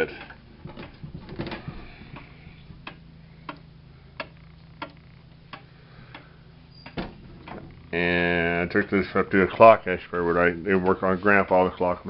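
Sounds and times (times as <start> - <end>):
light knocking and handling: 0.0 - 3.0
faint steady hum: 0.0 - 12.0
wall clock ticking: 0.0 - 12.0.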